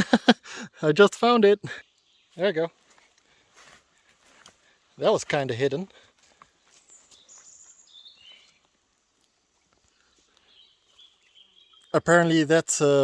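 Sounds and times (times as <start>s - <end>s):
faint thin high bird calls: 6.6s - 12.0s.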